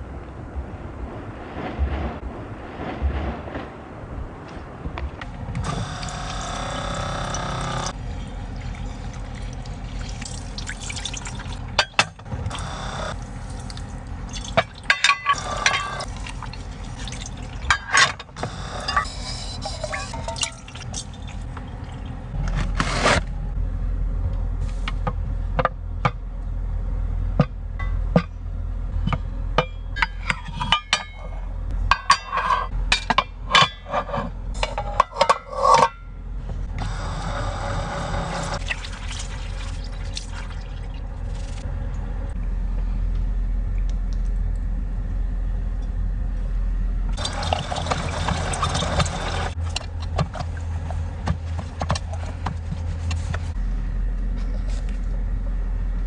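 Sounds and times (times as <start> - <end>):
low rumble: 0.0 - 6.1, 20.1 - 33.5, 39.6 - 47.5, 49.5 - 56.0
liquid pouring: 8.0 - 11.8, 15.6 - 17.7, 38.6 - 41.6, 47.2 - 49.6.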